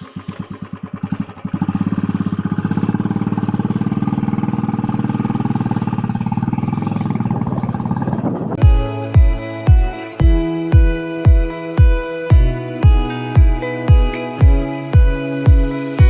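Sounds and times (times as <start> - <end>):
motorcycle engine idling: 0.0 - 16.0
music with heavy drums: 8.6 - 16.0.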